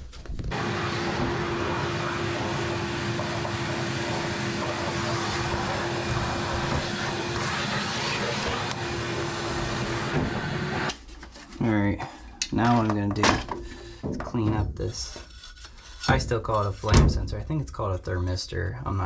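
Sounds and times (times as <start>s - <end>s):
shop vac running: 0.5s - 11.0s.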